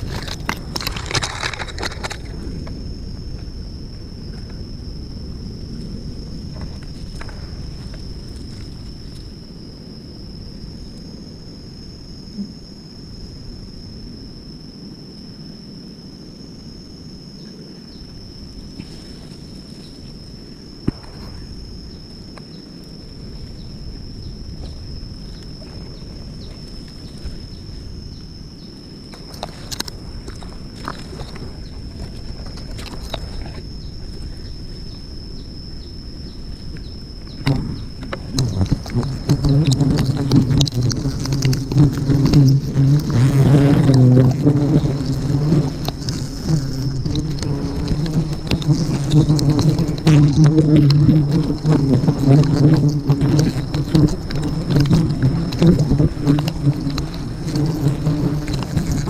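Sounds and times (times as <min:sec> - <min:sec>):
high-pitched insect drone: 0:00.0 - 0:59.0
bees humming: 0:33.0 - 0:59.0
faint ticks: 0:36.7 - 0:59.0.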